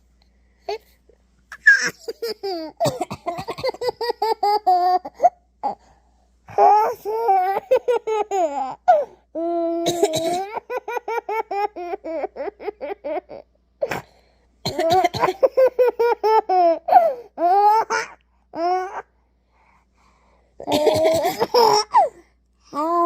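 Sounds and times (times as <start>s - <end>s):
baby laughing: 1.5s - 5.8s, 9.8s - 13.4s, 20.7s - 22.1s
playful cough: 2.8s - 4.1s, 9.8s - 10.7s, 13.8s - 15.7s, 20.6s - 22.2s.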